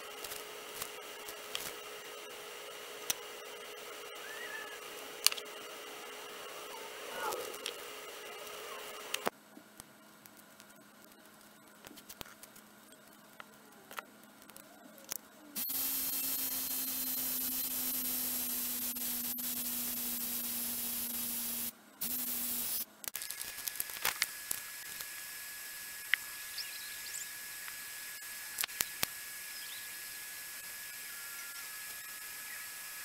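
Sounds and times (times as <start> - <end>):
spray paint hissing: 15.6 - 30.7.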